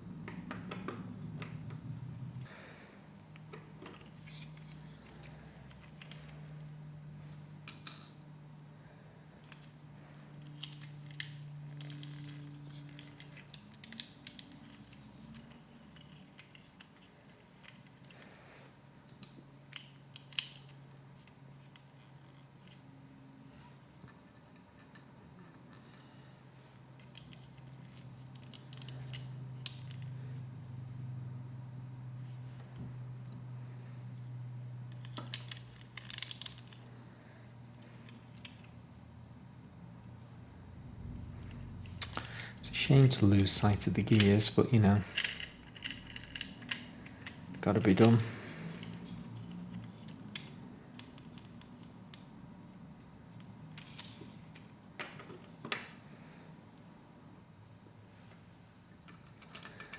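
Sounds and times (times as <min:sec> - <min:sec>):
low steady hum: 0:00.0 - 0:54.9
plastic pieces clicking and rattling: 0:10.4 - 0:18.2, 0:34.9 - 0:36.9, 0:42.0 - 0:48.2.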